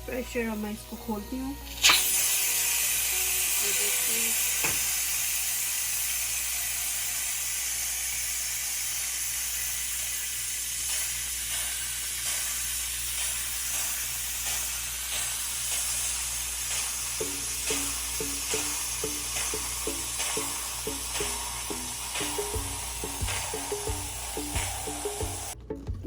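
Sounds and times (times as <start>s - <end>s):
background music: 0.0s - 4.6s, 17.2s - 26.0s
pressure cooker steam hiss: 0.1s - 25.6s.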